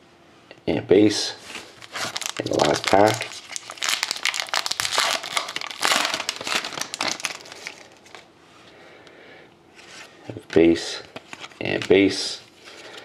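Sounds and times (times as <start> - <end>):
wrapper tearing and crinkling: 1.5 - 8.3.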